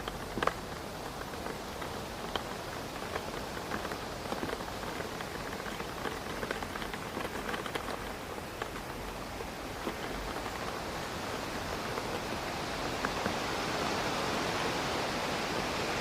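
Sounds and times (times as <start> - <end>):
rain pattering on a window: 0.0 - 16.0
wind: 0.0 - 16.0.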